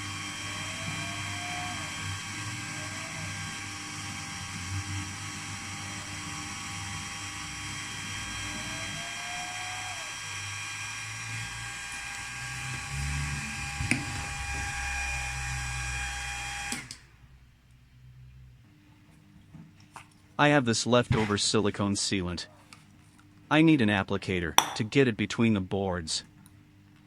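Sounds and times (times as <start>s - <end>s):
electric drill whining: 0.0s - 17.1s.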